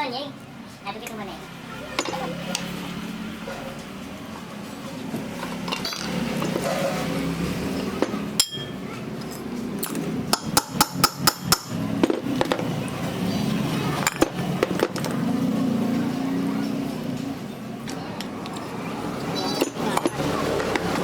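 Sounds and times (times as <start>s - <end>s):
hammer tapping on metal: 8.4s - 8.8s, 9.8s - 12.5s.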